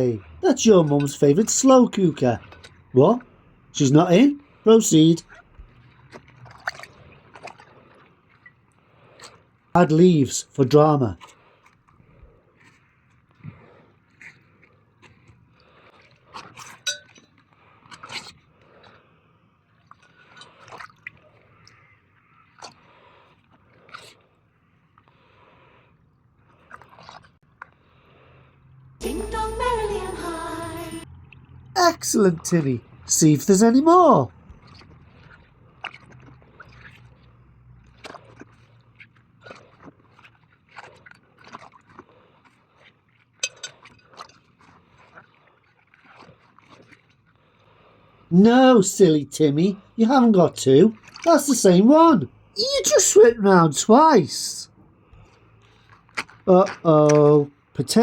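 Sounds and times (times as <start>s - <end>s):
water splashing and dripping: 0.0s - 12.4s, 19.8s - 21.9s, 31.0s - 58.0s
clinks against ceramic pot: 16.8s - 17.3s, 43.4s - 43.8s.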